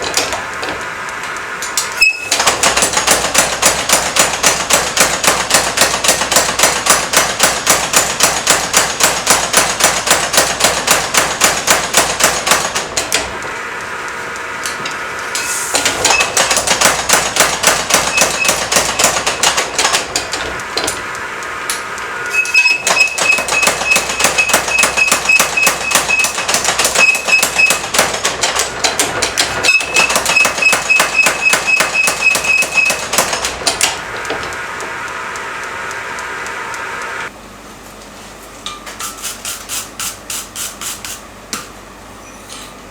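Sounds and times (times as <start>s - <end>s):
power hammer striking steel: 1.6s - 13.4s, 14.6s - 35.0s.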